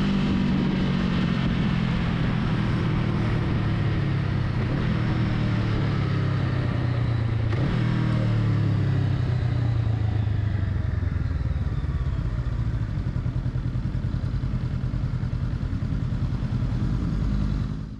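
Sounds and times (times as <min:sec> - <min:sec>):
motorcycle engine running: 0:00.0 - 0:17.9.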